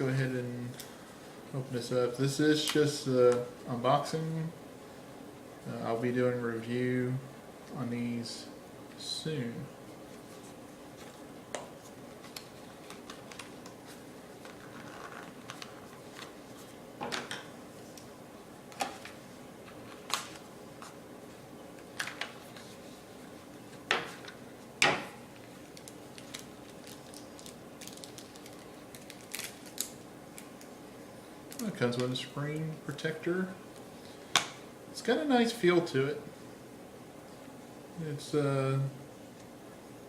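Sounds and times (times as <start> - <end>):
packaging being opened: 12.0 - 16.4, 25.4 - 30.7.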